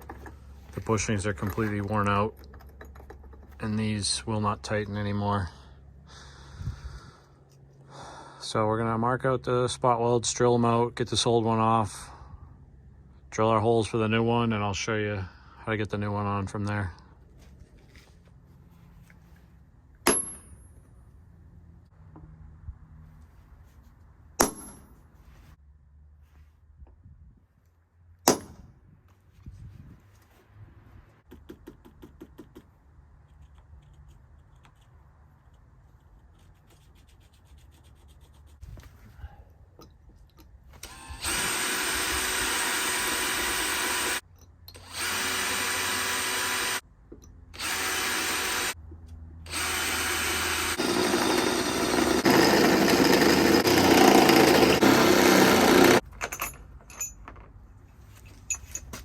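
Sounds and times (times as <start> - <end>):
power drill boring metal: 40.8 - 46.8, 47.6 - 48.8, 49.5 - 56.0.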